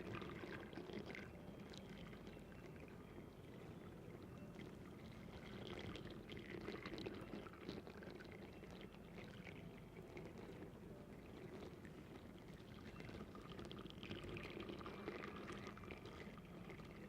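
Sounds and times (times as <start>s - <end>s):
liquid trickling and bubbling: 0.0s - 17.0s
low steady hiss: 0.0s - 17.0s
small irregular ticks: 0.0s - 17.0s.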